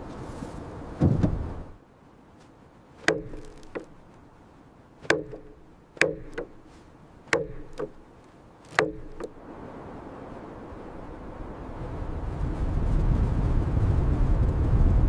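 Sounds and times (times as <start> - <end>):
axe chopping wood: 3.0 - 4.2, 5.0 - 9.4.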